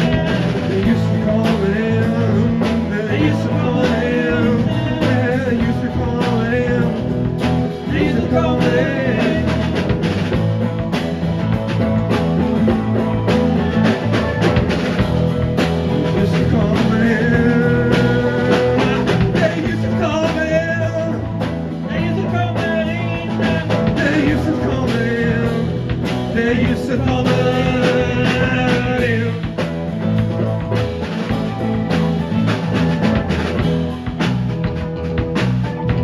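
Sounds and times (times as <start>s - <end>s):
bass guitar: 0.0s - 36.0s
drums steady beat: 0.0s - 36.0s
guitar: 0.0s - 36.0s.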